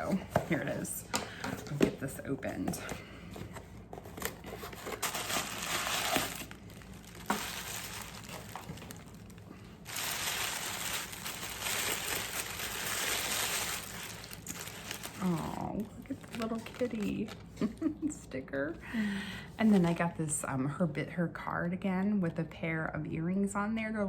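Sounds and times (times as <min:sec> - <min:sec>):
packing paper crinkling: 0:04.0 - 0:17.9.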